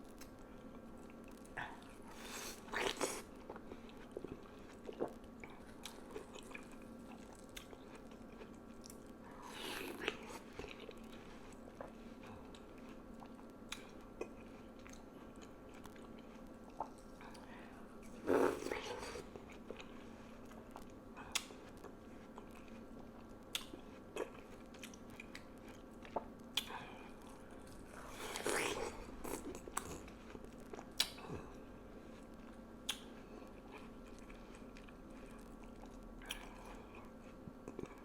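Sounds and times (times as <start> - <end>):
crunchy watermelon bites and chewing: 2.1 - 3.6, 4.2 - 11.1, 18.2 - 19.9, 23.6 - 31.4.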